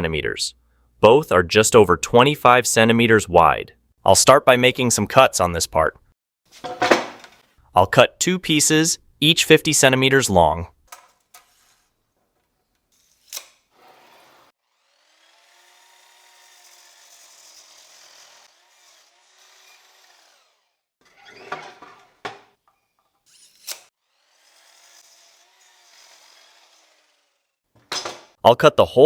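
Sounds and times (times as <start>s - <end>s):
power saw cutting wood: 13.0s - 22.3s, 23.2s - 27.6s.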